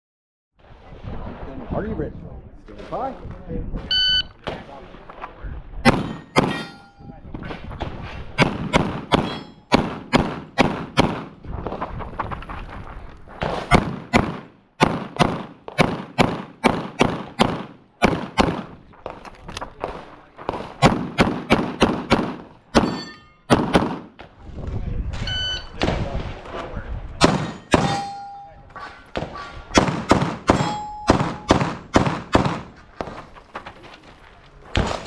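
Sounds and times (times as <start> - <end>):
rapid handgun fire: 5.9 - 6.6, 8.4 - 11.4, 13.7 - 18.7, 20.5 - 24.1, 27.2 - 28.0, 29.7 - 32.7.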